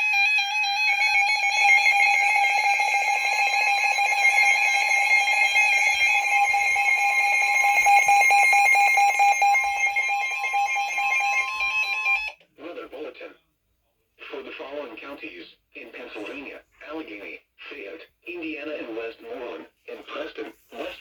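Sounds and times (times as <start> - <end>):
electronic alarm tone: 0.0 - 12.4
higher alarm tone: 0.0 - 12.4.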